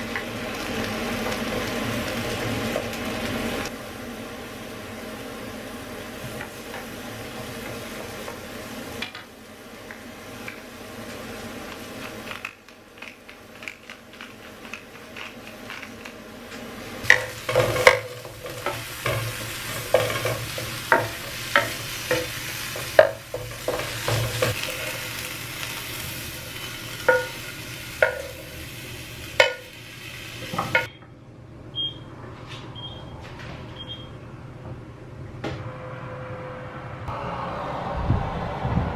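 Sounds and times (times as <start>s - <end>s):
vegetables sizzling in a pan: 0.0s - 30.9s
utensil knocking and scraping pan: 17.0s - 24.7s.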